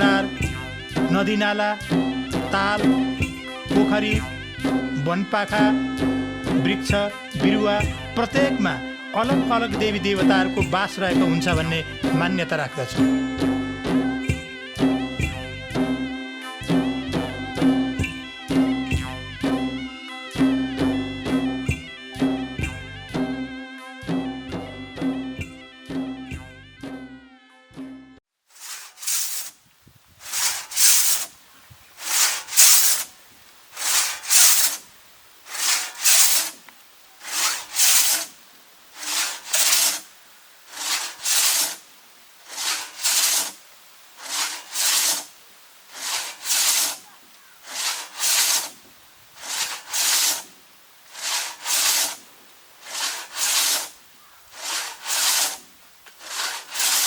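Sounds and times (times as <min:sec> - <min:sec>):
rhythmic rasping scraping strokes: 0:00.0 - 0:01.3, 0:28.6 - 0:29.5, 0:30.2 - 0:31.3, 0:32.0 - 0:34.8, 0:35.4 - 0:36.6, 0:37.2 - 0:57.0.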